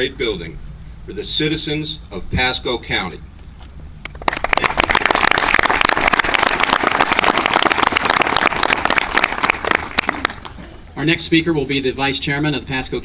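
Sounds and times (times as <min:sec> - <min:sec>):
audience applauding: 0:04.2 - 0:10.6.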